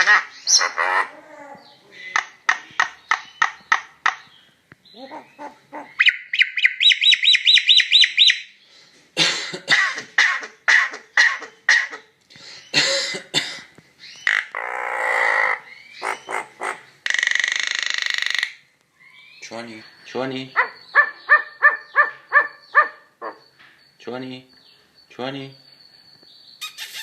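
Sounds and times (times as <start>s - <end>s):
rasping buzzy bird calls: 0.0s - 4.3s, 14.0s - 23.6s, 26.6s - 27.0s
starling whistled chirps: 6.0s - 8.7s, 19.0s - 27.0s
bird cough-like calls: 9.2s - 13.7s.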